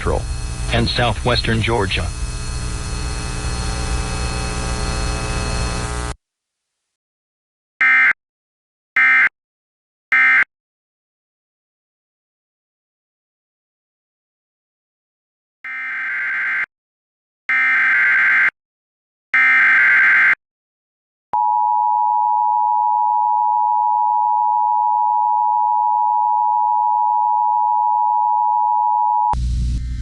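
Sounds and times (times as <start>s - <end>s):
broadcast voice: 0.0s - 2.3s.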